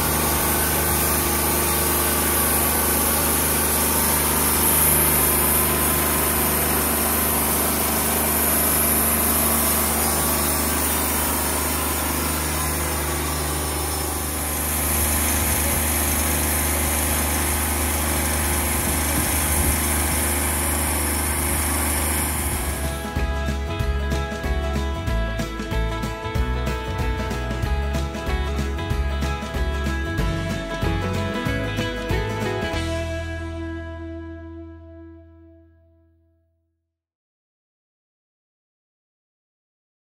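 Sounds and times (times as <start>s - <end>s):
high saw hiss: 0.0s - 23.0s
sawmill engine droning: 0.0s - 34.8s.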